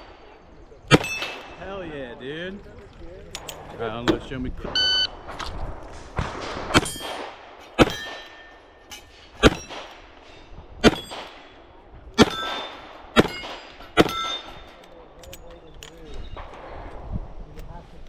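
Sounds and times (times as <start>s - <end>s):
steel plates ringing: 0.9s - 1.8s, 6.8s - 14.8s.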